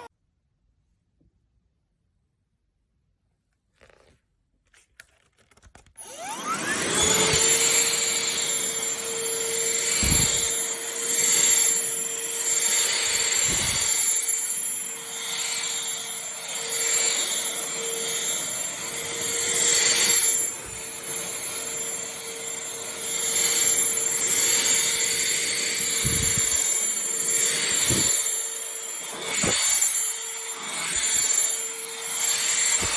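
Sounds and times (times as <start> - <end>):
handheld vacuum running: 6.0 - 32.9.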